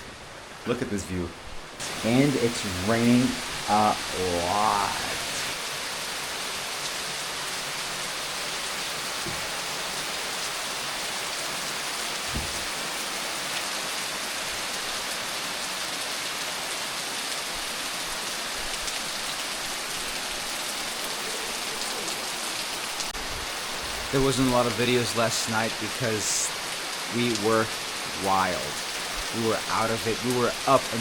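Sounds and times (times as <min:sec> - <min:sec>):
heavy rain falling: 0:00.0 - 0:31.0
faint low thump: 0:12.3 - 0:12.7.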